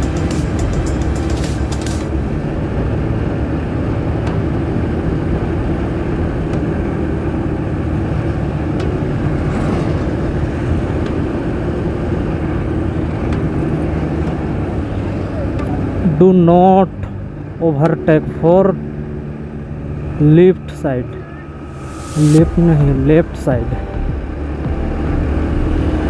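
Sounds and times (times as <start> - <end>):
road and wind noise: 0.0 - 26.0
motorcycle engine running: 18.4 - 26.0.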